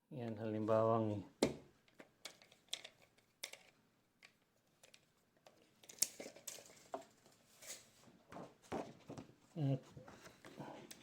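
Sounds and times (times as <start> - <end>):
light clicks and rustles of tools: 1.9 - 7.9.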